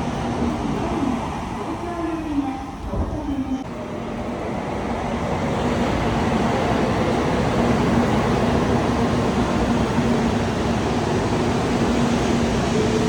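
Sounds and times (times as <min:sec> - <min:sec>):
bullet train rushing: 0:00.0 - 0:13.0.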